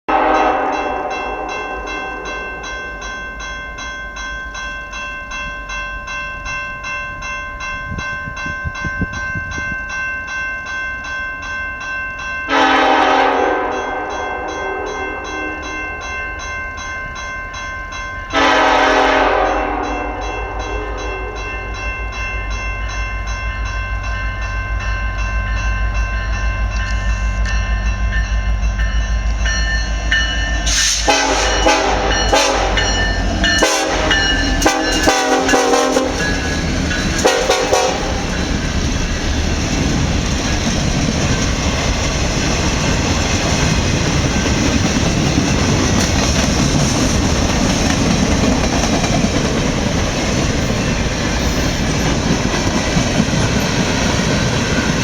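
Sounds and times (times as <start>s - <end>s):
locomotive horn blasts: 0.1s - 2.8s, 12.5s - 16.1s, 18.3s - 21.8s, 30.7s - 36.4s, 37.2s - 38.3s
train wheels on rails: 0.1s - 55.0s.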